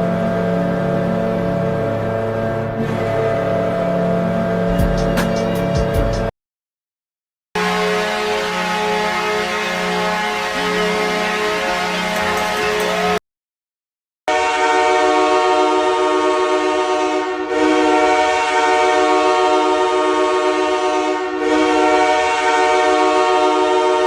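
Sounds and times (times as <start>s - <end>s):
multi-tone air horn blast: 7.6s - 13.2s, 14.3s - 24.0s.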